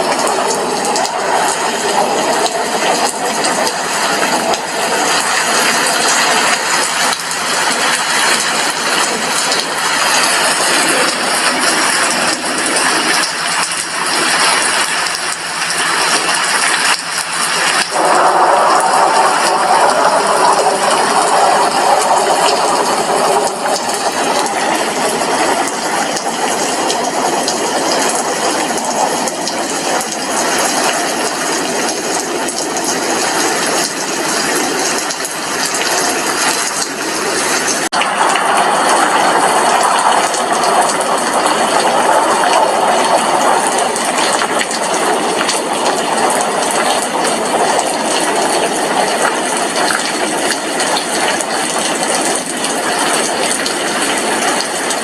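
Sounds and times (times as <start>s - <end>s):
raindrops striking a glass window: 0.0s - 55.0s.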